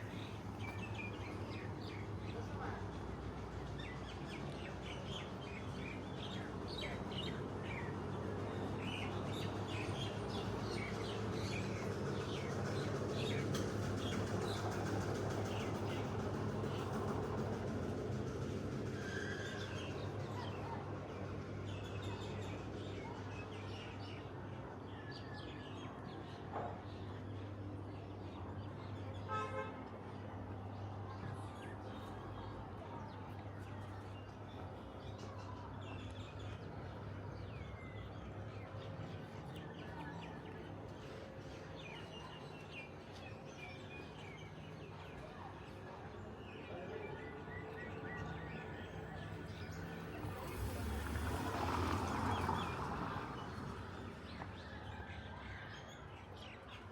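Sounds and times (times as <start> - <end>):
traffic hum: 45.2 - 56.7.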